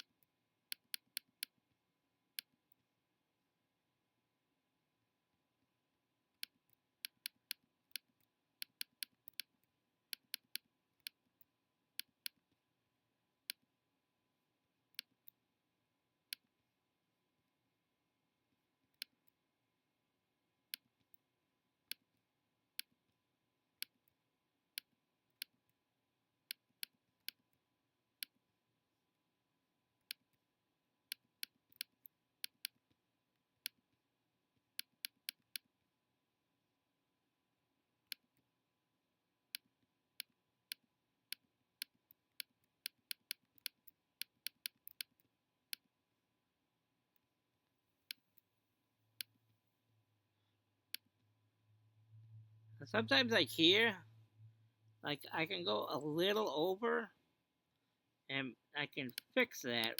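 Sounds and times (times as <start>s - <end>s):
computer mouse clicking: 0.0s - 1.6s, 6.4s - 11.2s, 31.1s - 33.0s, 39.5s - 45.9s.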